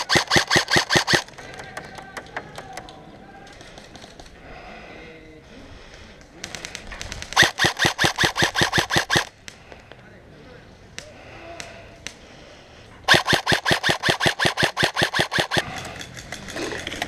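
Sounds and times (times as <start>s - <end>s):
airsoft rifle full-auto bursts: 0.0s - 1.3s, 7.4s - 9.3s, 13.1s - 15.8s
distant scattered shots: 0.0s - 2.8s, 6.4s - 9.7s, 13.1s - 17.0s.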